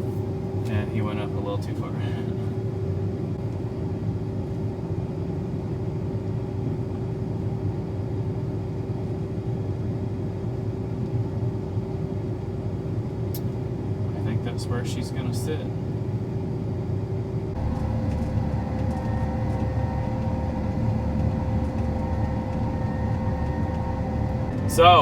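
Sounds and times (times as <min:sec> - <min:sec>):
vehicle engine running: 0:17.5 - 0:25.0.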